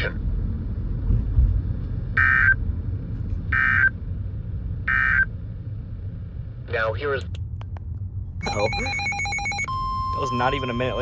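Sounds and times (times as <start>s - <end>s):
low steady radio hum: 8.4s - 11.0s.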